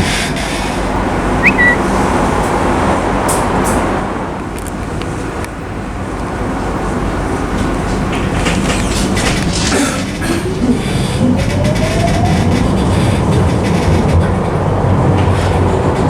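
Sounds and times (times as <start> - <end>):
city street traffic rumble: 0.0 - 16.0
trams: 0.0 - 16.0
short high chirp: 1.4 - 1.8.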